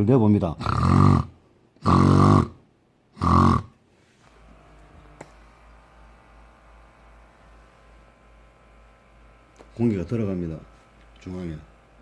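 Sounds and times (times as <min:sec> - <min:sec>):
man imitating snoring: 0:00.6 - 0:02.6, 0:03.2 - 0:03.8.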